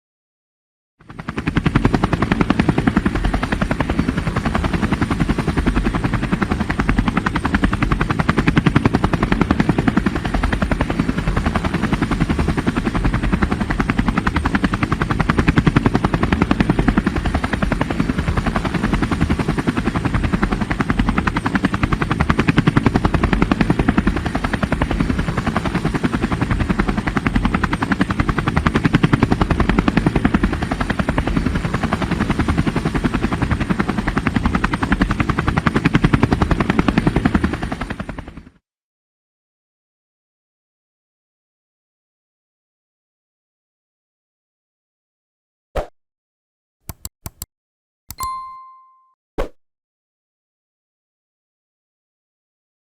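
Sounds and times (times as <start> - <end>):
helicopter rotor chopping: 1.0 - 38.5.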